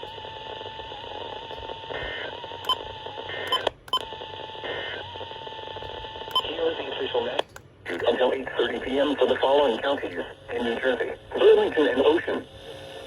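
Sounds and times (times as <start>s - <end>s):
radio hiss and static: 0.9s - 3.6s, 4.6s - 5.1s, 6.2s - 13.0s
sharp clicks: 7.4s - 7.7s.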